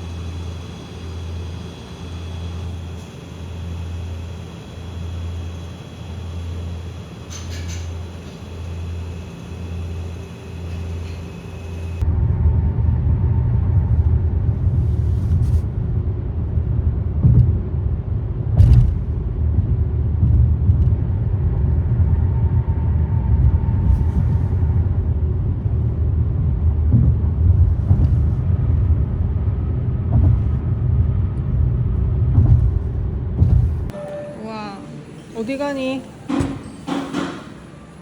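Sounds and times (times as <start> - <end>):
moving car rumble: 10.8 - 34.0.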